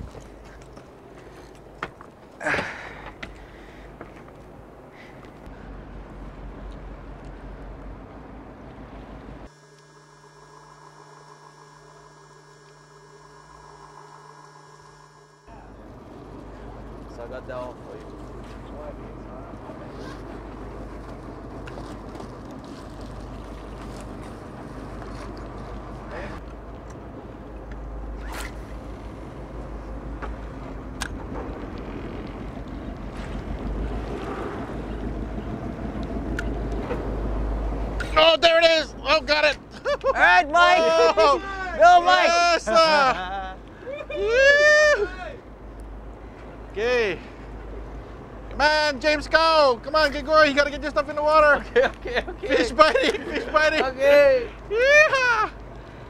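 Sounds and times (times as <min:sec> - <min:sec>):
water noise: 0:00.0 - 0:43.1
boat engine rumble: 0:00.0 - 0:56.0
electrical hum with tones: 0:00.0 - 0:56.0
wind: 0:00.0 - 0:56.0.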